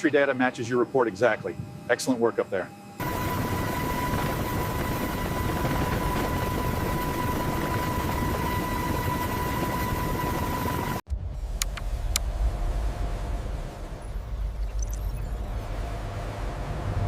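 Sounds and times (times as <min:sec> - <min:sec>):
helicopter whining rush: 0:00.0 - 0:11.0
low rumble: 0:03.0 - 0:17.0.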